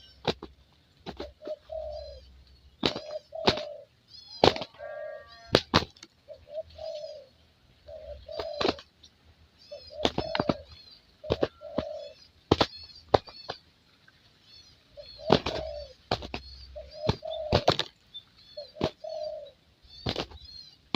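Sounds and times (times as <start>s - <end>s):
dove cooing: 0.0s - 8.9s, 9.6s - 13.6s, 14.9s - 17.9s, 18.5s - 20.4s.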